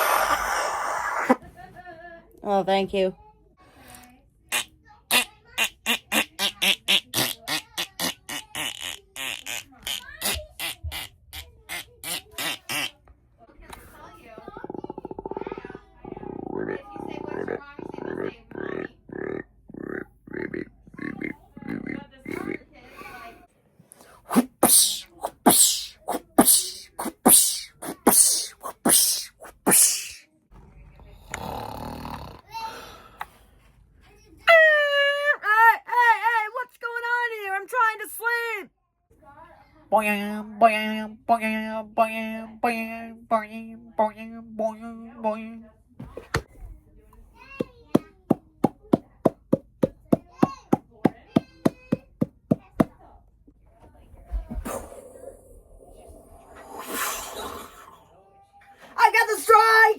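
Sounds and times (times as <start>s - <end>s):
person imitating sneezes: 24.0s - 30.2s
voiced tone: 24.2s - 30.2s
person making mouth clicks: 24.3s - 30.2s.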